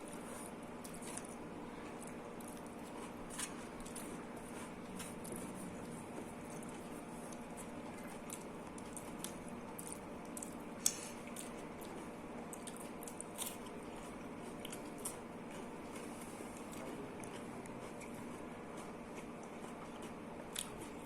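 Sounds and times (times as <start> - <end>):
wet chewing and mouth clicks: 0.0 - 21.0.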